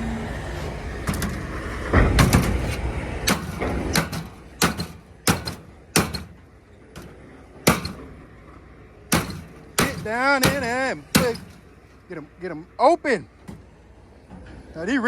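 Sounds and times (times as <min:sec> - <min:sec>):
tools knocking on sheet metal: 0:01.1 - 0:06.4, 0:07.0 - 0:08.1, 0:09.1 - 0:11.6.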